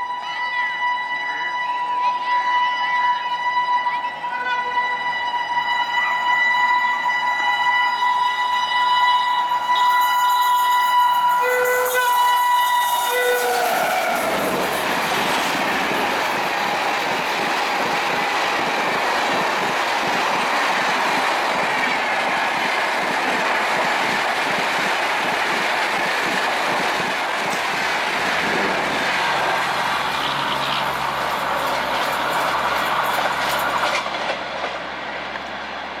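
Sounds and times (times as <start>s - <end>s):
train rushing past: 8.2s - 36.0s
wheels clattering over rail joints: 13.4s - 35.5s.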